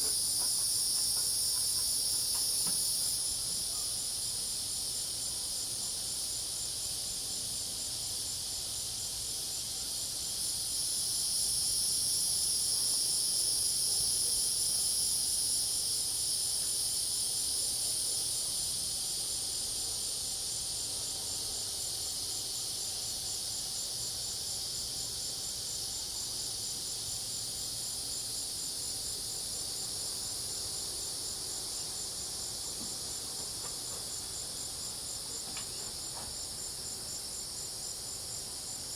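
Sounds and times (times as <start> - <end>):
insect pulsing rapidly: 0.0 - 3.6
crickets and cicadas trilling: 0.0 - 38.9.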